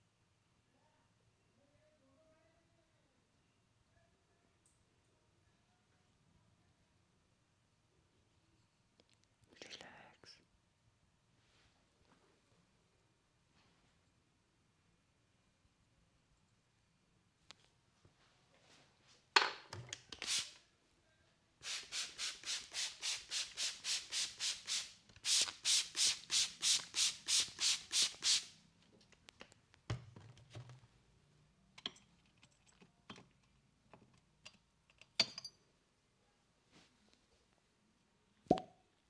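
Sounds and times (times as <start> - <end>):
palms rubbing together: 20.2 - 20.6, 21.6 - 28.5.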